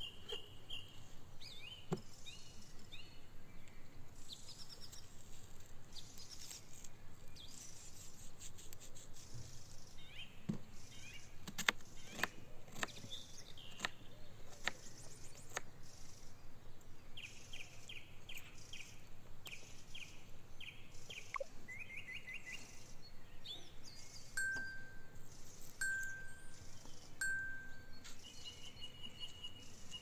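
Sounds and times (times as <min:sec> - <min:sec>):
songbirds chirping in trills: 0:00.0 - 0:30.0
clear ringing tone: 0:24.4 - 0:25.2, 0:25.8 - 0:26.5, 0:27.2 - 0:28.1.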